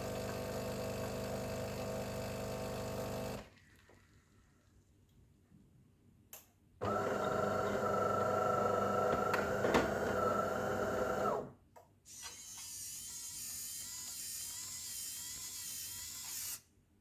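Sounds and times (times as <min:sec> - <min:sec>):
coffee machine motor humming: 0:00.0 - 0:03.5, 0:06.8 - 0:11.5.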